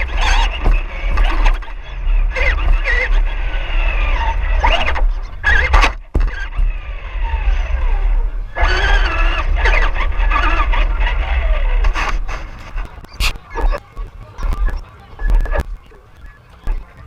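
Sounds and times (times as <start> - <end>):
crowd voices: 0.0 - 17.0
gliding tones: 0.0 - 17.0
toy car rumbling over pavement: 0.0 - 17.0.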